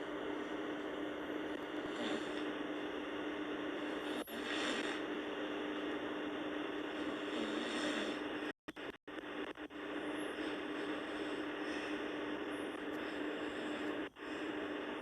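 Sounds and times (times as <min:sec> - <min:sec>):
steady hum and hiss: 0:00.0 - 0:15.0
person snoring softly: 0:00.8 - 0:05.8, 0:06.6 - 0:08.5, 0:09.4 - 0:15.0.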